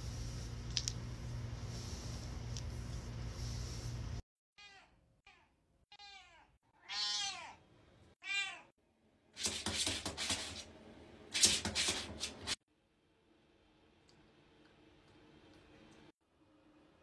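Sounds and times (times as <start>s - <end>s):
cat meowing: 4.6s - 7.6s, 8.2s - 8.7s.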